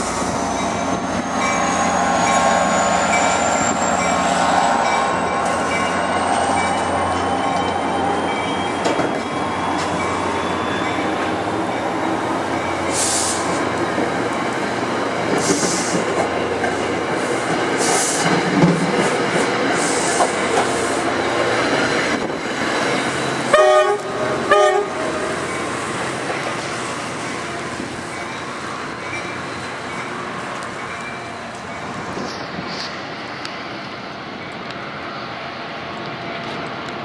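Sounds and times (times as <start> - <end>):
train wheels rumbling on rails: 0.0 - 37.0
high hiss: 12.8 - 13.6
train horn blasts: 23.5 - 25.3.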